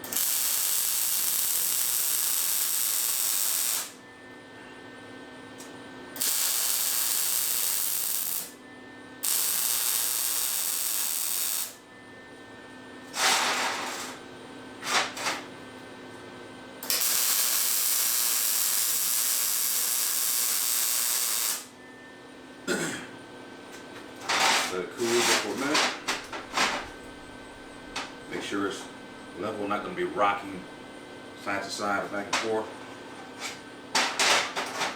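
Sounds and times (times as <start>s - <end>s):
welder hissing: 0.0s - 4.0s, 6.2s - 8.5s, 9.2s - 11.8s, 16.8s - 21.7s.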